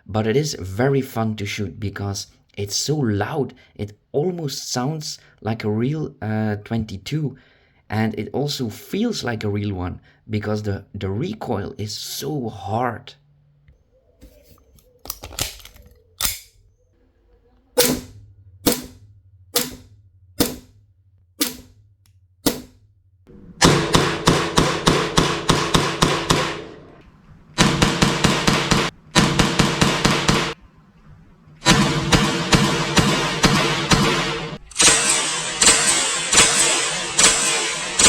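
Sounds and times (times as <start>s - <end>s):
airsoft pistol shots: 17.8s - 19.0s, 19.6s - 20.8s, 21.4s - 21.8s, 22.4s - 22.8s, 23.6s - 27.0s, 27.6s - 30.6s, 31.6s - 38.0s.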